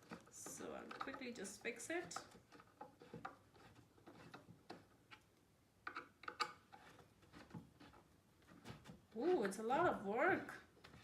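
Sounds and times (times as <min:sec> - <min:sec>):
wooden panels clicking together: 0:05.9 - 0:06.6.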